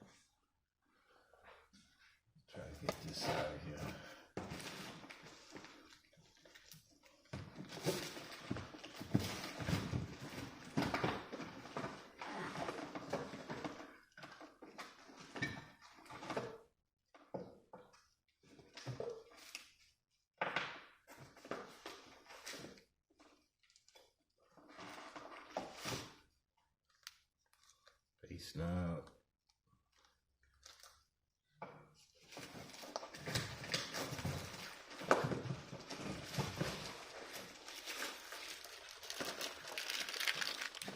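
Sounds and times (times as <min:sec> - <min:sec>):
packaging rustling and scraping: 0:07.4 - 0:14.8, 0:32.1 - 0:40.9.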